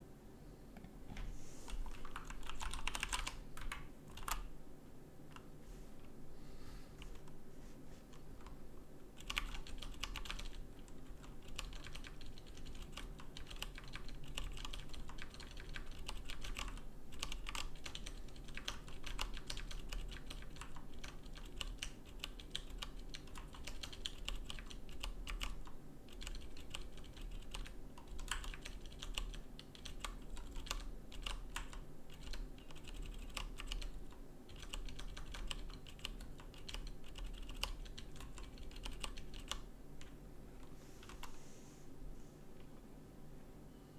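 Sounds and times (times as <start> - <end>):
mechanical keyboard typing: 1.8 - 4.4, 9.2 - 40.1.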